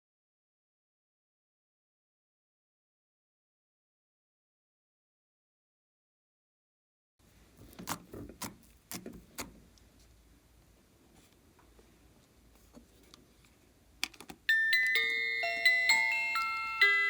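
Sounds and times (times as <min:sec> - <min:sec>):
bright chiming music: 0:14.5 - 0:17.0.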